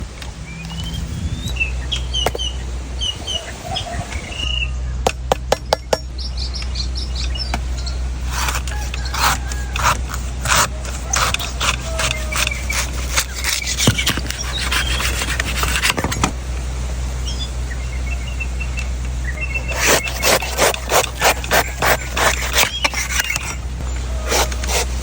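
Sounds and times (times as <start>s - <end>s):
low background hum: 0.0s - 25.0s
small birds chirping: 0.0s - 25.0s
knife scraping coconut: 2.2s - 2.4s, 7.5s - 16.3s, 19.5s - 25.0s
sharp knocks: 5.0s - 6.1s.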